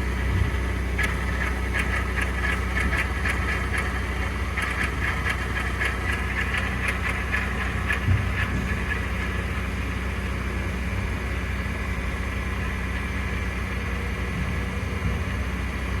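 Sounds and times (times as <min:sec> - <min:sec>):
engine idling: 0:00.0 - 0:16.0
rhythmic grinding rattle: 0:01.0 - 0:09.8.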